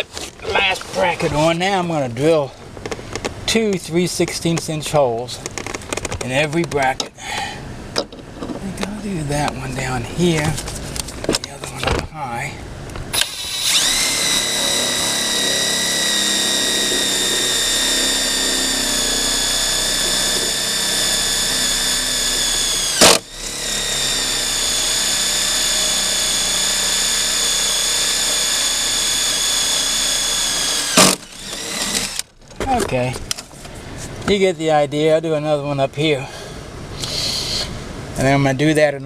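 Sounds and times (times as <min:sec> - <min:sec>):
electric drill whining: 0:13.1 - 0:32.3.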